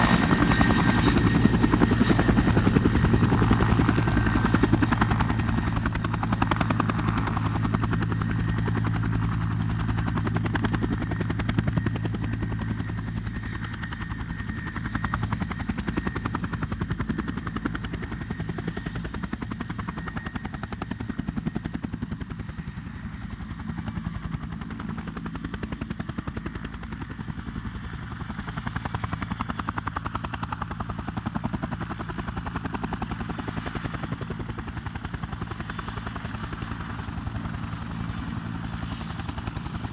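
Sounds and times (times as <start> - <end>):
helicopter rotor chopping: 0.0 - 39.9.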